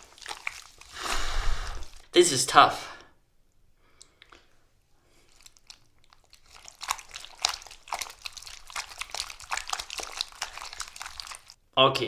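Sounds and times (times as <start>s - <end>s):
bananas being crushed: 0.0s - 1.2s, 5.1s - 11.6s.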